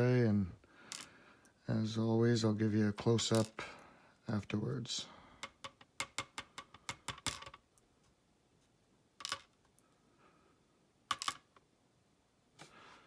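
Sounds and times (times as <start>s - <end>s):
lock pins dropping into tray: 5.4s - 7.6s, 9.2s - 9.6s, 11.1s - 11.6s.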